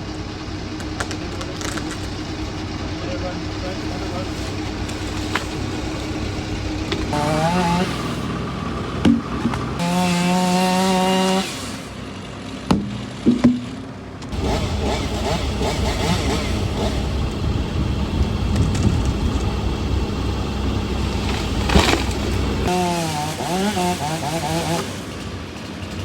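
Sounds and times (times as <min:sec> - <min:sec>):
chainsaw revving: 0:01.0 - 0:26.0
chainsaw cutting wood: 0:03.7 - 0:26.0
sharp knocks: 0:09.0 - 0:09.7, 0:12.7 - 0:13.8.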